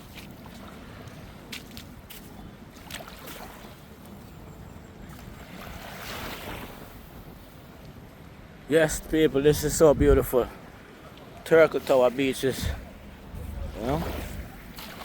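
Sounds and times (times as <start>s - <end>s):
sea surf on sand: 0.0s - 15.0s
wind noise on microphone: 9.0s - 10.4s.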